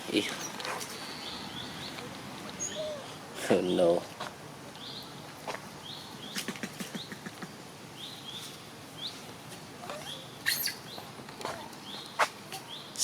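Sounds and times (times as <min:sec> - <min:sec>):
small animal chirping: 0:10.0 - 0:10.8.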